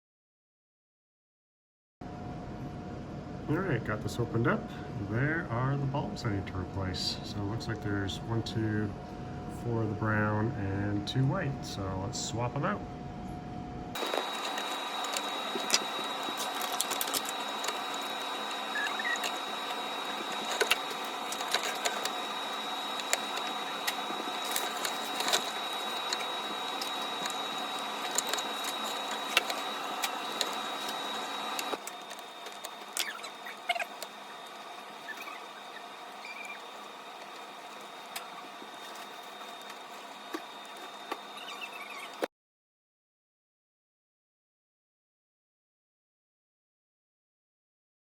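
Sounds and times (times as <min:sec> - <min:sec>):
steady background hum: 0:02.0 - 0:42.3
thin high whine: 0:02.1 - 0:42.3
plastic parts clicking and scratching: 0:14.0 - 0:35.4.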